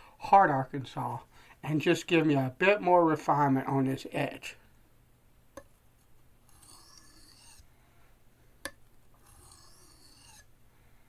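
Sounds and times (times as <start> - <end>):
knife scraping on whetstone: 6.5 - 7.6, 9.2 - 10.5.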